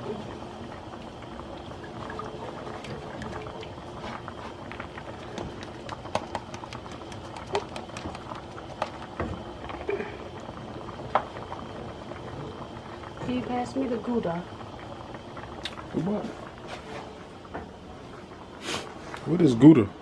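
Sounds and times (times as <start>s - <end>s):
sauce bubbling in a pan: 0.0s - 19.2s.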